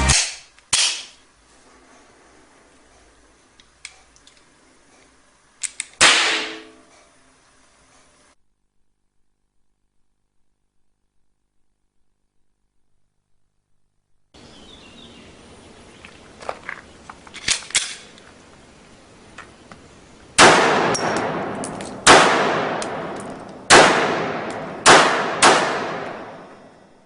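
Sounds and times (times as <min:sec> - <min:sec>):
pistol handling clicks: 0:00.1 - 0:01.2, 0:05.6 - 0:06.1, 0:17.3 - 0:18.2, 0:20.9 - 0:22.1, 0:22.8 - 0:23.7
blank pistol shots echoing: 0:20.4 - 0:26.9.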